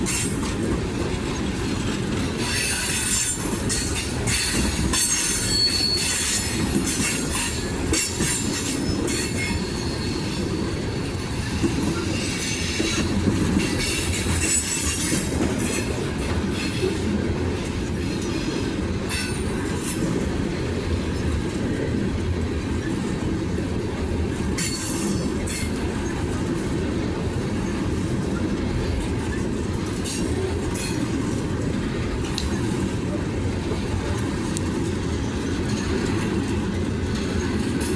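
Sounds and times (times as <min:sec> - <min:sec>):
train wheels rumbling on rails: 0:00.0 - 0:37.9
high-pitched wheel squeals: 0:04.3 - 0:06.6.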